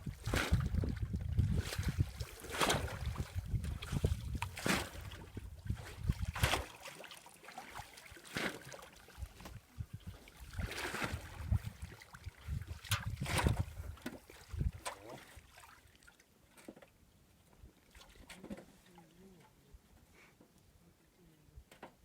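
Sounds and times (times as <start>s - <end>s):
wind rumbling on microphone: 0.0s - 6.6s, 9.2s - 14.9s
water sloshing and splashing: 0.0s - 19.4s.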